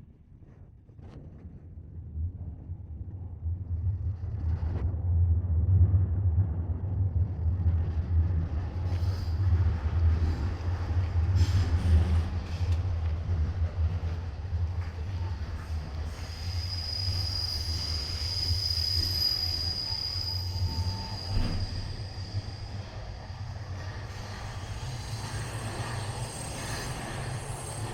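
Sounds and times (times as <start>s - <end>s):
train rumble: 0.0s - 27.9s
wheels hissing on rail: 8.3s - 27.9s.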